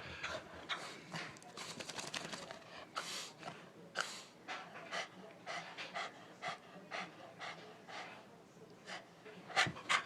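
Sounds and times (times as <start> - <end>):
dog panting: 4.5 - 8.3.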